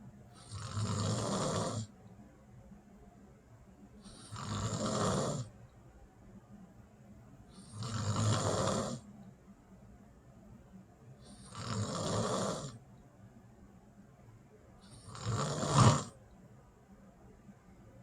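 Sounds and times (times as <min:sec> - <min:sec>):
person snoring: 0:00.4 - 0:01.9, 0:04.0 - 0:05.5, 0:07.6 - 0:09.0, 0:11.2 - 0:12.8, 0:14.9 - 0:16.1.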